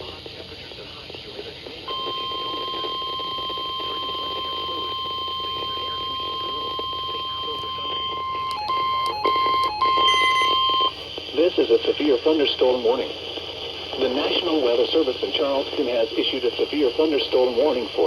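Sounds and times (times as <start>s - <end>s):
steady electronic alarm tone: 6.2s - 11.0s
on-and-off beeping: 9.6s - 11.0s.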